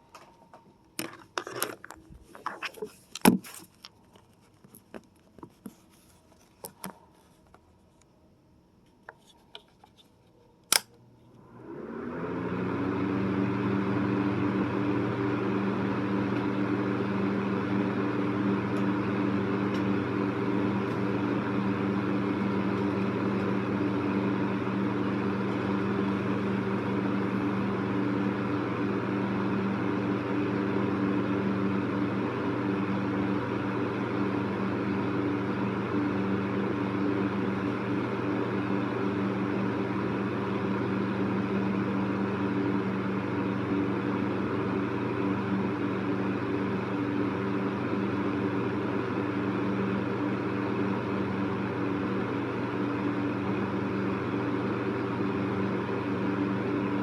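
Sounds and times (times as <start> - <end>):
fan motor hum: 0.0 - 3.8, 5.0 - 57.0.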